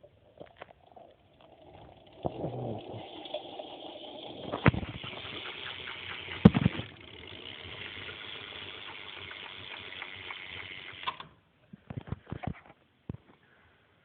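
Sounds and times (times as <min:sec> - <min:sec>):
bicycle hub clicking freewheeling: 0:01.2 - 0:11.3.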